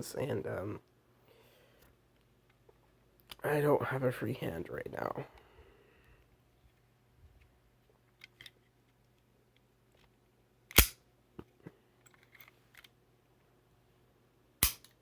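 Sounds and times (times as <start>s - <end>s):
cap gun crack: 10.7s - 11.0s, 14.6s - 15.0s
cap gun metallic clicks: 10.7s - 11.0s, 14.6s - 15.0s.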